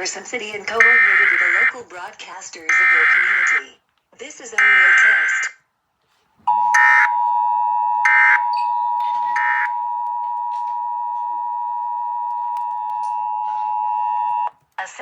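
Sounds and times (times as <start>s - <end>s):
two-tone alert signal: 6.5s - 14.5s.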